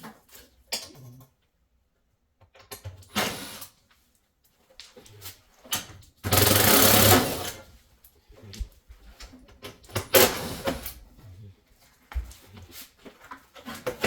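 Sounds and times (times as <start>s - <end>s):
parts clicking and knocking: 5.6s - 7.6s
cordless drill running: 6.3s - 7.6s.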